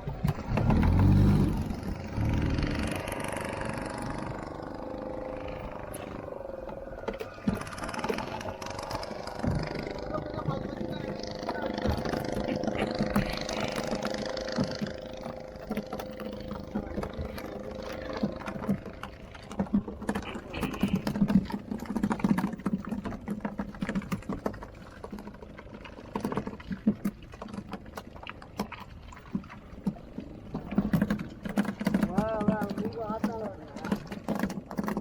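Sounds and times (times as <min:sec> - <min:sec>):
knocking and thumping on a boat: 0:00.0 - 0:35.0
motor hum: 0:00.0 - 0:35.0.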